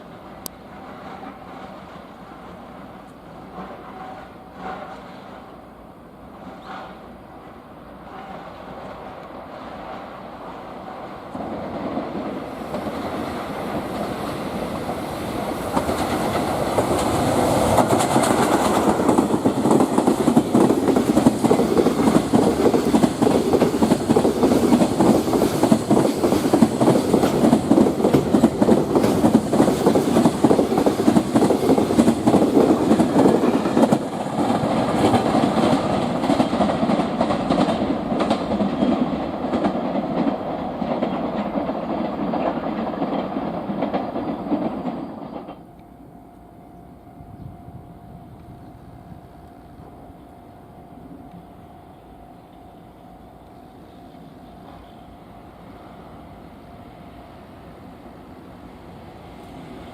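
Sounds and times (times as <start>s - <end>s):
freight train wheels clattering: 8.4s - 45.8s.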